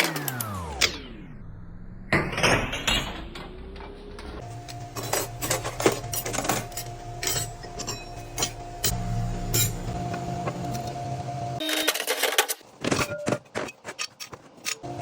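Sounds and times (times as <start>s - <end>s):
steady hum: 0.6s - 11.6s
metal parts clinking and clattering: 4.4s - 11.0s, 11.6s - 15.0s.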